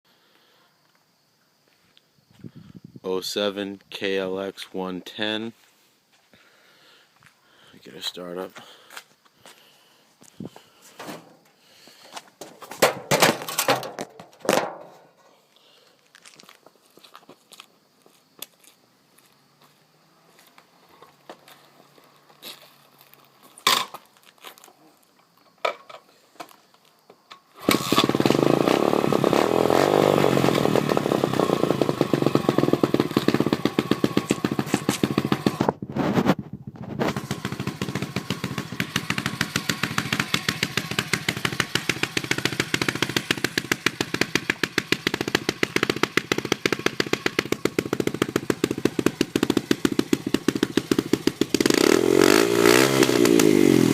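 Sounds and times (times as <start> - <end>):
motorcycle engine starting and revving: 27.6 - 53.9.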